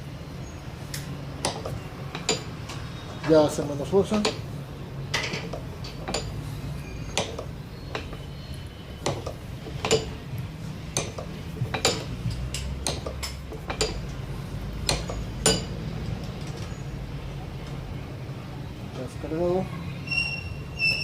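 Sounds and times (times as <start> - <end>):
metallic clicks of tool on metal: 11.0 - 14.2, 14.8 - 16.7.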